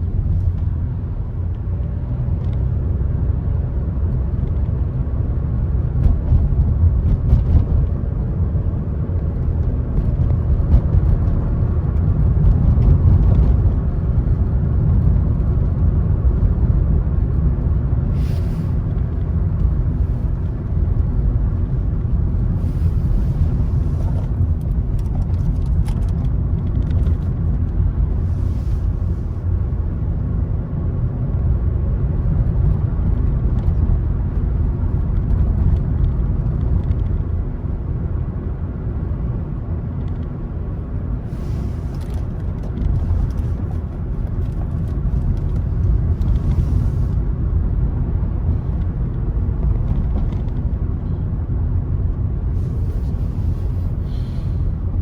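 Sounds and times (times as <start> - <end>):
car tyres and engine rumble: 0.0 - 55.0
short hisses: 18.1 - 18.9, 52.6 - 54.8.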